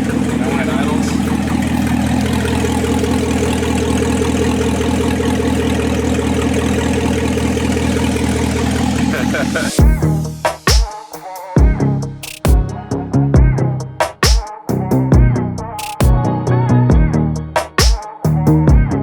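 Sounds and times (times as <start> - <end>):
car engine idling loudly: 0.0 - 10.4.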